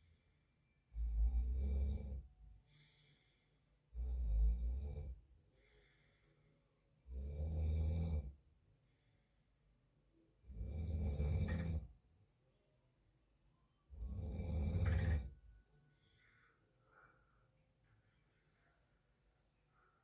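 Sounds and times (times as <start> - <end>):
quiet breathing: 0.0 - 12.0, 13.5 - 20.0
man snoring: 7.1 - 8.3, 10.5 - 11.9, 14.0 - 15.4.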